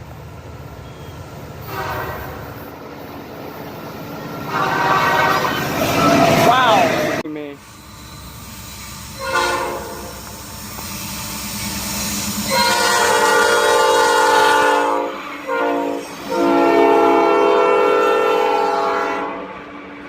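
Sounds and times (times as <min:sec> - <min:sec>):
train rumble: 0:00.0 - 0:20.0
locomotive horn blasts: 0:01.6 - 0:02.4, 0:04.5 - 0:05.7, 0:09.2 - 0:10.2, 0:12.5 - 0:19.5.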